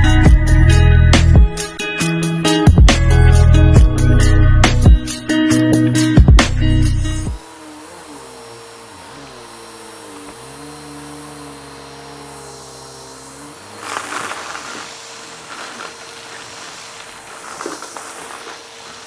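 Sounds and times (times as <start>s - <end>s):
vacuum cleaner running: 6.9s - 19.0s.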